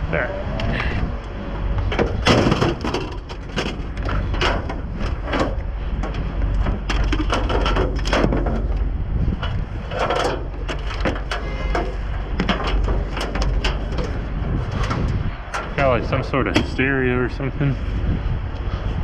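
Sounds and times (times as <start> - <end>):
steady low rumble: 0.0 - 19.0
trash rummaged in dumpster: 1.9 - 16.8.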